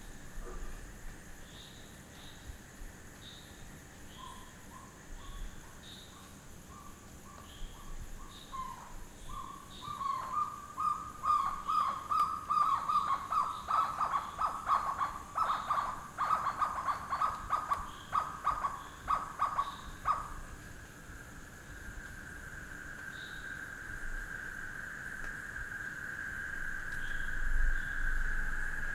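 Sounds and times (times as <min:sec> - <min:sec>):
insects droning: 0:00.0 - 0:28.9
animal calling rapidly: 0:12.6 - 0:20.4.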